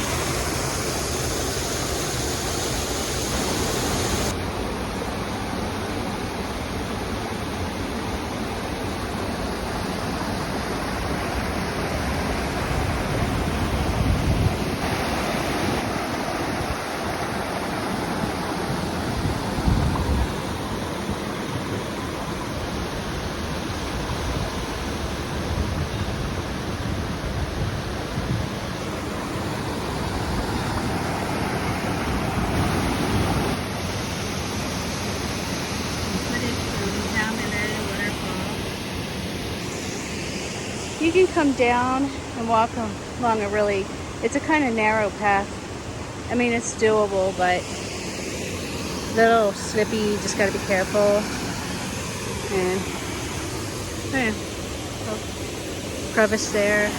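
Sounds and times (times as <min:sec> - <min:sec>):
waterfall rushing: 0:00.0 - 0:56.9
wind buffeting microphone: 0:12.2 - 0:14.9, 0:18.9 - 0:21.3, 0:24.0 - 0:33.6.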